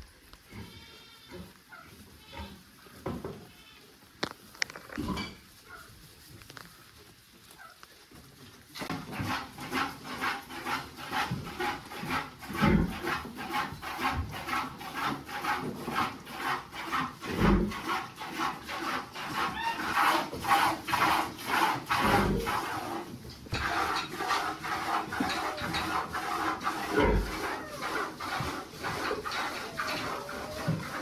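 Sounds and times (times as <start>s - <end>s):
rhythmic rasping strokes: 8.9s - 31.0s.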